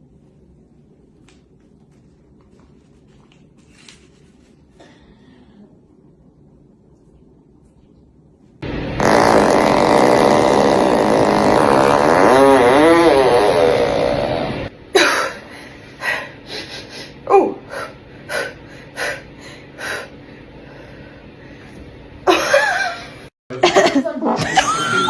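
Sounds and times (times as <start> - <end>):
long fart: 8.9 - 14.7
short fart bursts: 8.9 - 14.7.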